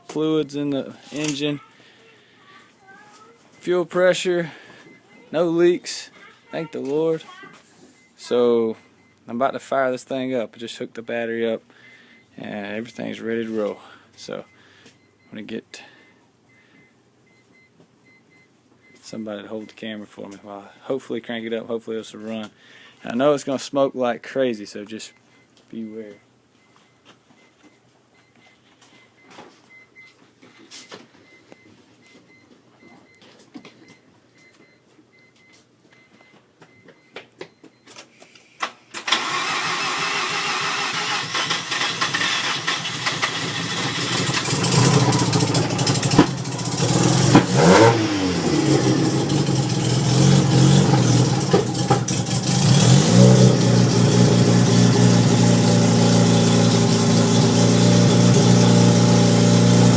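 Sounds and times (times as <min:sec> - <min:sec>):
rotary engine starting and revving: 0:39.0 - 0:59.9.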